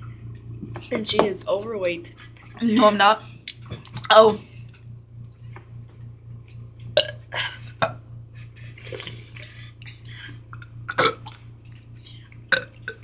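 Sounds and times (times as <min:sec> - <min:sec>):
steady low hum: 0:00.0 - 0:13.0
burps: 0:07.0 - 0:08.0, 0:10.5 - 0:11.4, 0:12.5 - 0:13.0.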